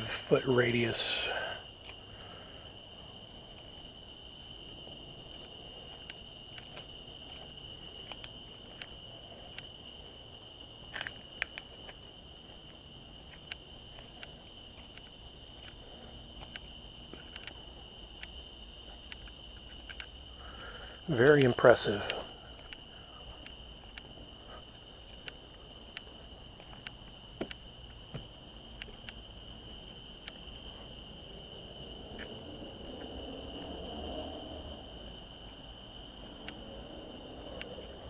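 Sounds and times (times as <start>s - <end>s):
crickets chirring: 0.0s - 38.0s
faint clicks: 4.8s - 33.7s, 36.2s - 36.8s, 37.4s - 38.0s.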